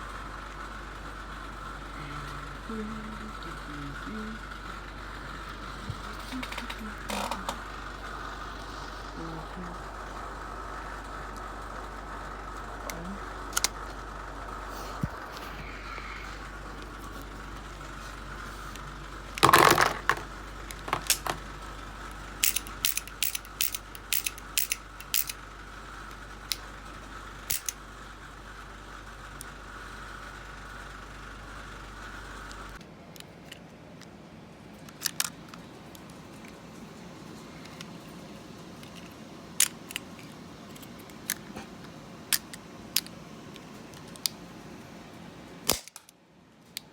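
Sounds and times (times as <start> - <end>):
steady hum: 0.0 - 46.9
revolver clicking: 18.7 - 25.4, 27.5 - 27.8.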